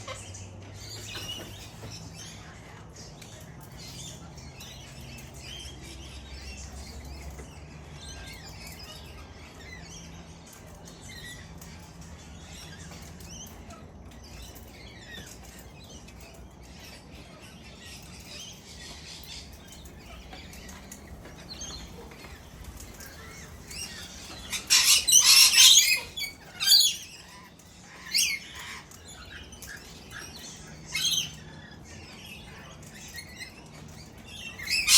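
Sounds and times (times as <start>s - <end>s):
parrots chirping and chattering: 0.0s - 34.9s
parrots squawking harshly: 23.0s - 29.4s.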